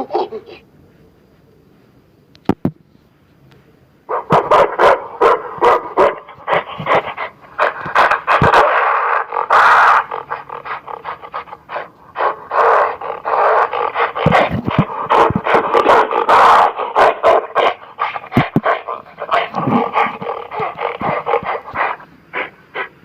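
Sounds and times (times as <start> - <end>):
gorilla grunting: 6.2 - 23.0
gorilla hoarse calls: 6.2 - 23.0.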